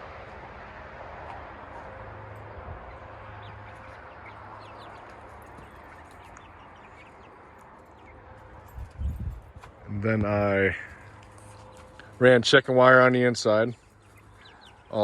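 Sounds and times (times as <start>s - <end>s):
chicks peeping: 2.6s - 9.8s, 10.4s - 15.0s.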